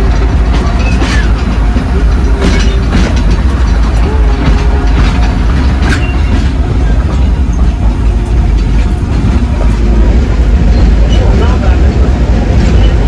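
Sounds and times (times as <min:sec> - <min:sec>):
rail car rumbling along track: 0:00.0 - 0:13.0.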